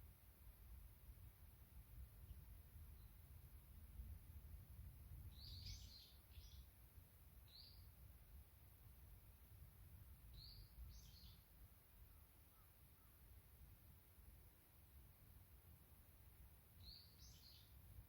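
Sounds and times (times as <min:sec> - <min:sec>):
small bird chirping: 0:05.3 - 0:06.7, 0:07.5 - 0:07.9, 0:10.3 - 0:11.5, 0:16.8 - 0:17.8.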